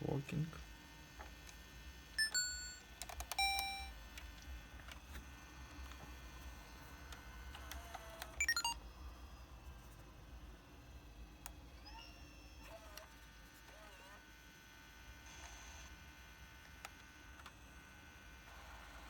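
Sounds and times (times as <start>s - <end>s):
camcorder electronic beeps: 2.2s - 4.0s, 8.4s - 8.8s.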